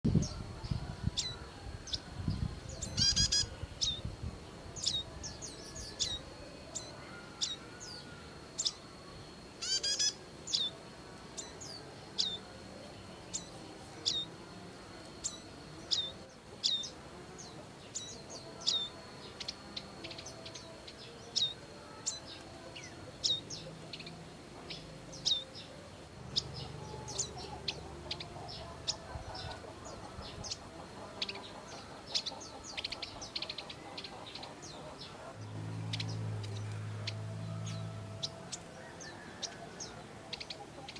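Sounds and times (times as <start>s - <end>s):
faint steady high tone: 0.1s - 40.9s
bird chirps: 1.1s - 4.1s, 4.7s - 10.8s, 11.4s - 14.4s, 15.0s - 40.9s
bird rattling trills: 2.8s - 4.0s, 9.6s - 10.7s.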